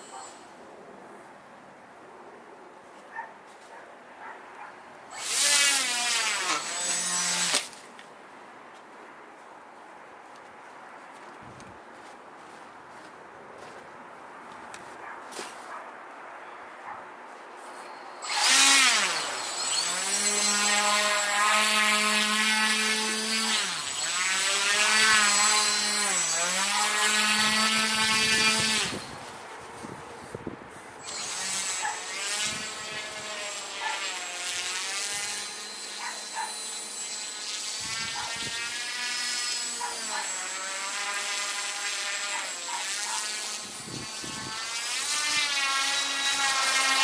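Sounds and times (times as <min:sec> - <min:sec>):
toy vehicle motor whining: 0:00.0 - 0:00.5, 0:17.7 - 0:29.2, 0:31.0 - 0:47.0.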